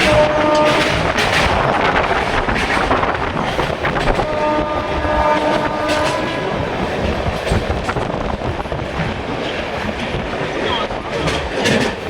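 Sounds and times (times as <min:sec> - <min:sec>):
train horn: 0:00.0 - 0:01.7, 0:04.1 - 0:06.9
train wheels rumbling on rails: 0:00.0 - 0:12.0.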